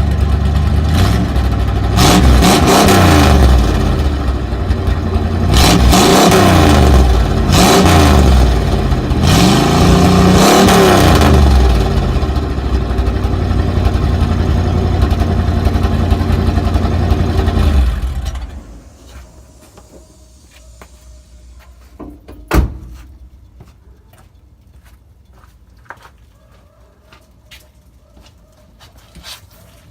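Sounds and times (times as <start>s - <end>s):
car engine revving and idling: 0.0s - 21.6s.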